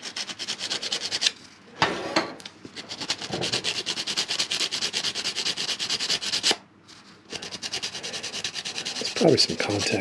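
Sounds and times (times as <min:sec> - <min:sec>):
sandpaper scratching on metal contacts: 0:00.0 - 0:01.3, 0:02.8 - 0:06.5, 0:07.3 - 0:10.0.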